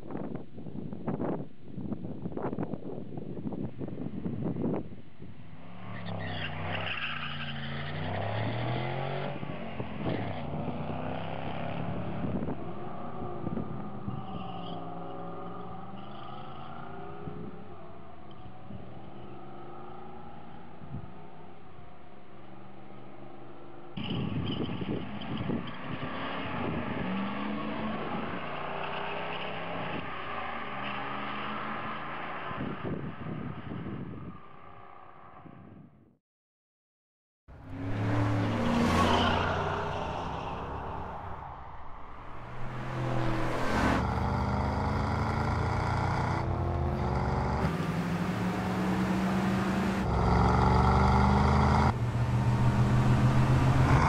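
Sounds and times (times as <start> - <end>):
car engine revving: 37.5 - 54.0.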